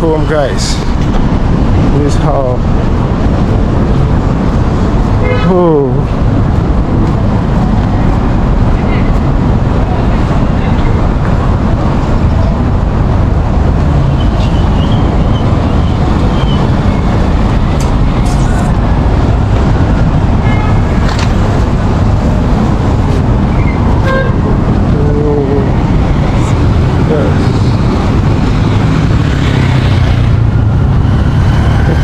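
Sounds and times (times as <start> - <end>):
street traffic: 0.0 - 32.0
car horn toots: 24.0 - 24.4.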